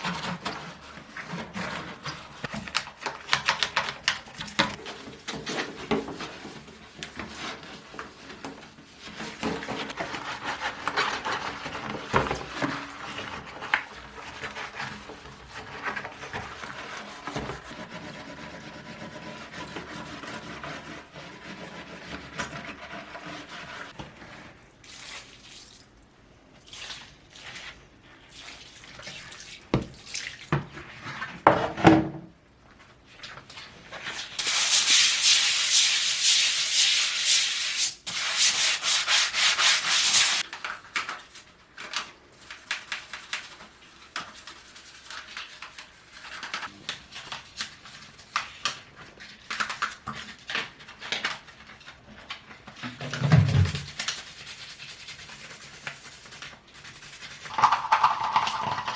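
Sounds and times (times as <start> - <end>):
household objects clattering: 57.5 - 58.9.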